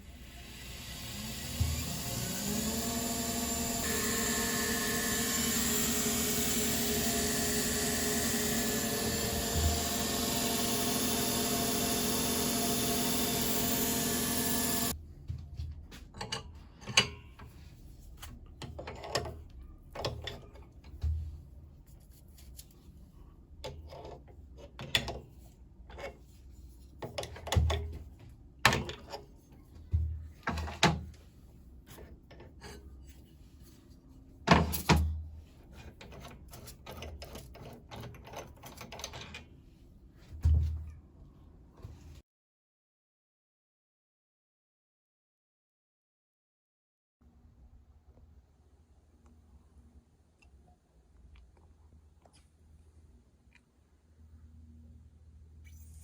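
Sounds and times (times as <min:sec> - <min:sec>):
power tool motor running: 0:00.2 - 0:14.9.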